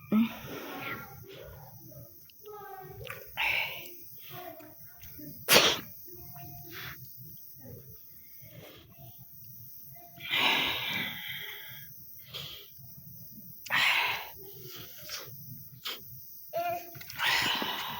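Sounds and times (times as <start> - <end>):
faint breathing: 0.0 - 2.0, 3.4 - 4.6, 6.6 - 16.3, 17.2 - 17.9
person sneezing: 5.5 - 5.9.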